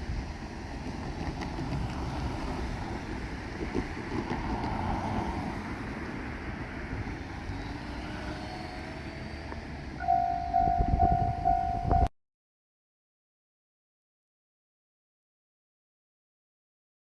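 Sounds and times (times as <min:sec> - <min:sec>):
diesel train rumbling past: 0:00.0 - 0:12.1
pulsing loud tone: 0:10.0 - 0:12.1
heavy low thumps: 0:10.2 - 0:12.1.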